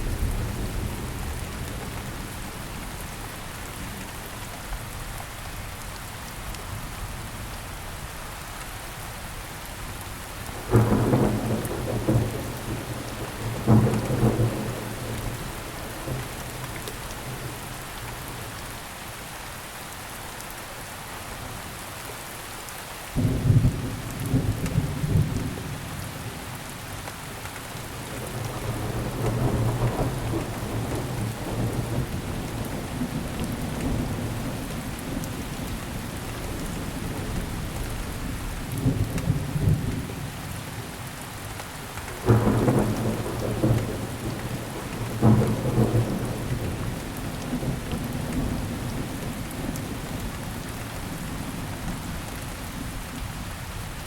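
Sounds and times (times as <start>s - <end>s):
steady rain: 0.0s - 54.0s
sharp thunder claps: 42.2s - 49.9s
rolling thunder: 42.2s - 50.2s.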